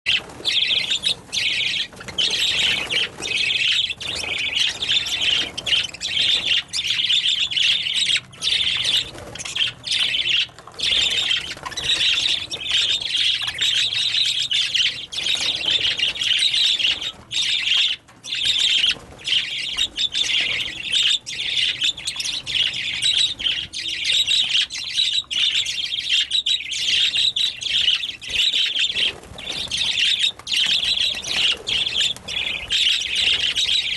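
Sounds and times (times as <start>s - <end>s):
budgerigars chattering: 0.1s - 33.9s.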